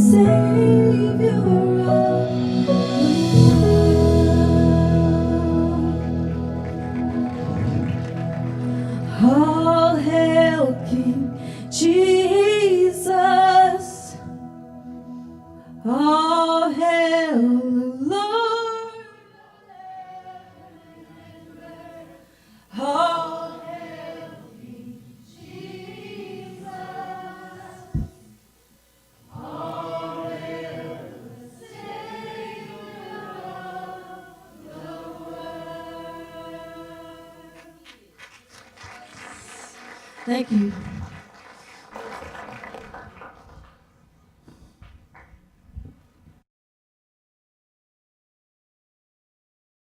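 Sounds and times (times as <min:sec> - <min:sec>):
woman singing with vibrato: 0:00.0 - 0:07.3, 0:08.9 - 0:14.3, 0:15.8 - 0:28.3
group singing along: 0:00.0 - 0:14.2, 0:16.4 - 0:28.4, 0:29.2 - 0:38.1.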